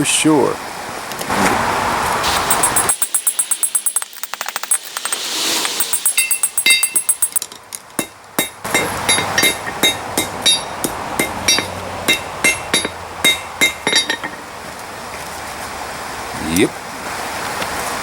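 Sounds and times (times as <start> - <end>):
hammer striking hot steel on anvil: 2.3 - 7.4, 8.0 - 14.4.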